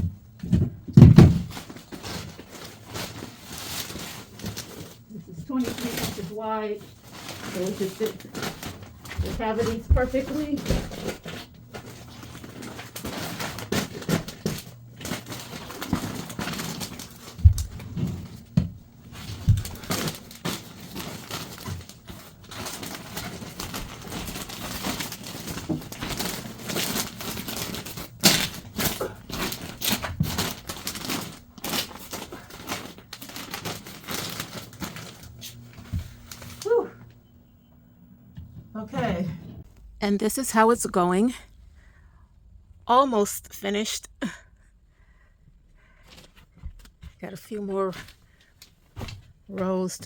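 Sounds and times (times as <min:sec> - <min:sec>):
paper rustling and crinkling: 0:01.0 - 0:36.8
dull thumps: 0:08.4 - 0:16.6.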